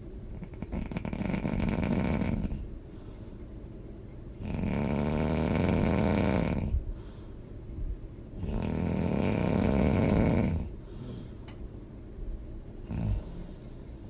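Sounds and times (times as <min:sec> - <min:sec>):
person snoring loudly: 0:00.6 - 0:02.6, 0:04.4 - 0:06.8, 0:08.4 - 0:10.7.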